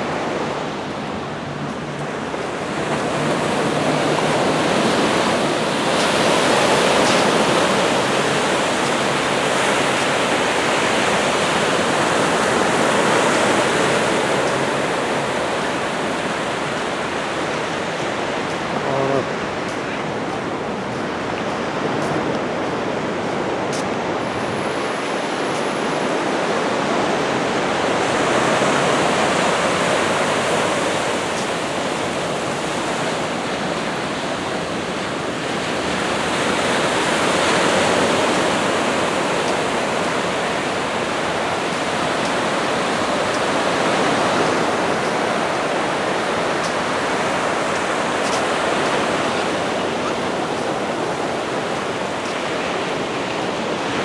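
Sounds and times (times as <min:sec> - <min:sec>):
small waves breaking on sand: 0:00.0 - 0:54.0.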